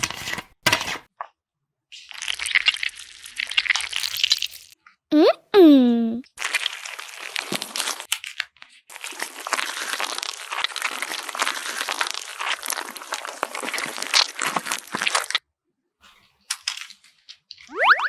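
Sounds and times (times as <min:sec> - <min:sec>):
paper being crumpled: 0:06.4 - 0:15.4.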